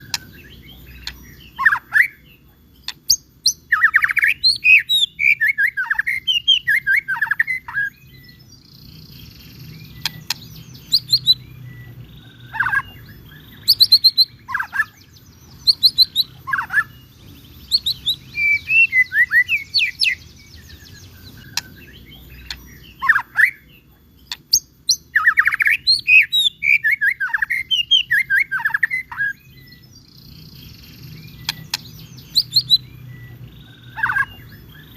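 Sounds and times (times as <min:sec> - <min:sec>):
bird singing whistled phrases: 0:00.0 - 0:02.3, 0:03.5 - 0:08.4, 0:17.7 - 0:29.9, 0:31.1 - 0:34.9
faint low hum: 0:00.0 - 0:34.9.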